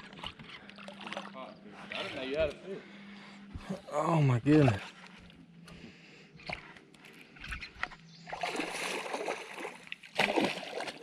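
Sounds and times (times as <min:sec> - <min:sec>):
fish splashing in water: 0:08.3 - 0:11.0.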